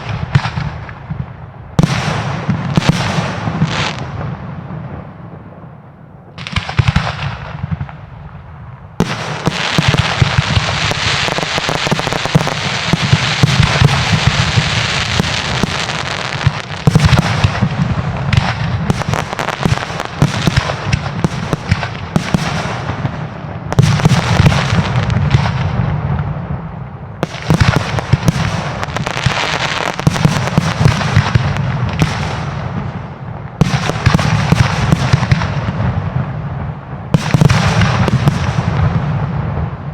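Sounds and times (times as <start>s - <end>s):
fireworks bangs and crackle: 0.0s - 39.9s.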